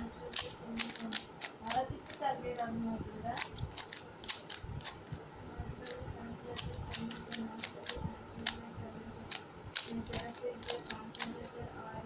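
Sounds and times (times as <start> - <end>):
speed cube layers clicking: 0.3 - 2.7, 3.4 - 5.2, 6.6 - 8.6, 9.3 - 11.5.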